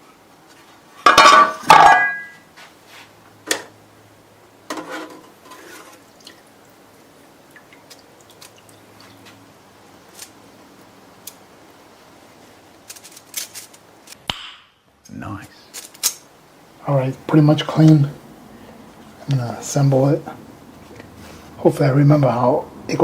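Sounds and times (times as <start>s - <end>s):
small ticks and drips: 6.1s - 9.5s
metal parts clattering: 12.9s - 13.8s
faint low hum: 14.9s - 23.0s.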